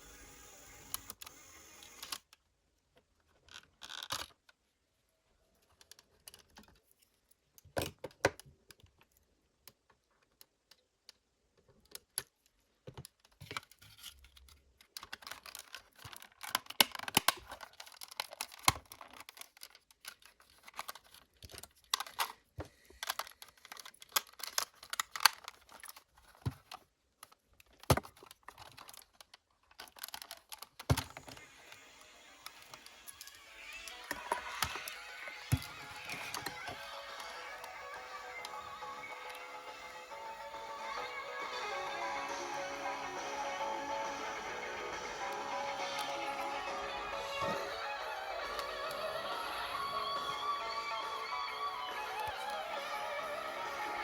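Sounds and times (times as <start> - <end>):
plastic parts clicking and rattling: 3.2 - 4.6, 5.6 - 31.4, 32.5 - 38.5.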